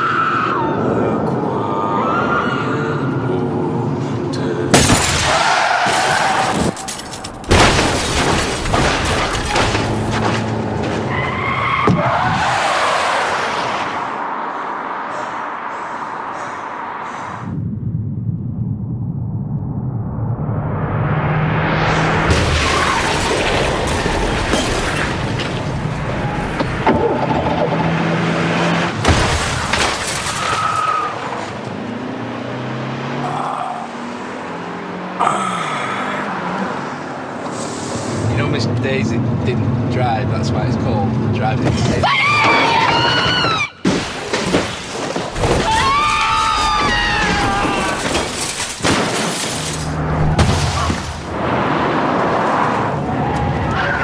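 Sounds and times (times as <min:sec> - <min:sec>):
car engine and road noise: 0:00.0 - 0:54.0
glass breaking: 0:04.7 - 0:10.4, 0:22.3 - 0:25.6, 0:29.0 - 0:30.6, 0:43.9 - 0:51.2
vehicles crashing: 0:04.7 - 0:17.5, 0:20.5 - 0:54.0
heavy crash impacts: 0:06.0 - 0:10.5, 0:46.6 - 0:51.5.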